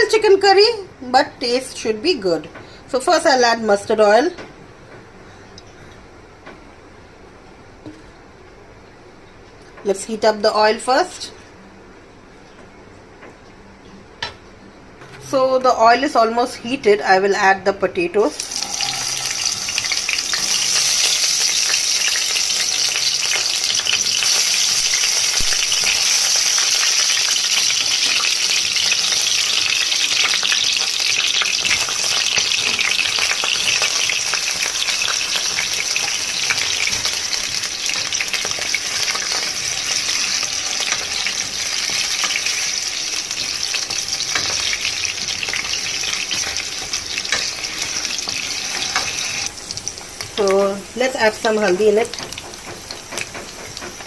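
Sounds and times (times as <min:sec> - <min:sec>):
potatoes sizzling in oil: 0:18.3 - 0:54.0.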